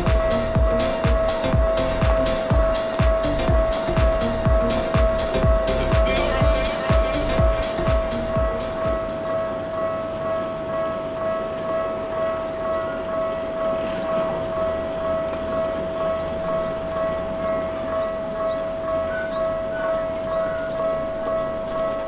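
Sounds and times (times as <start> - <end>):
low knocks: 0.0 - 6.1
level crossing alarm ringing: 0.0 - 22.0.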